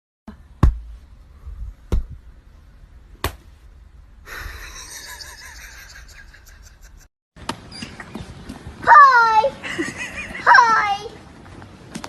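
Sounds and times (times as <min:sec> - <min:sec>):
faint short squeaks: 0:07.6 - 0:08.3.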